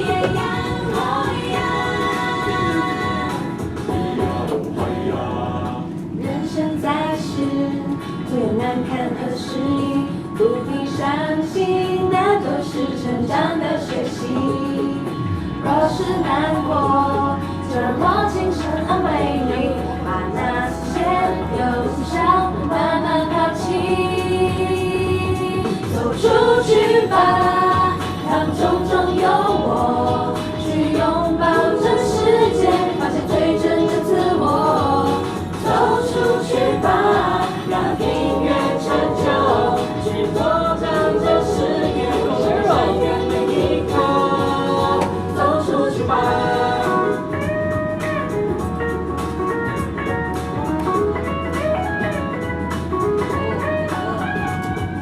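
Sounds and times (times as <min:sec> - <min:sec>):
group of voices singing: 0:00.0 - 0:48.4
steady low beat: 0:28.6 - 0:51.2.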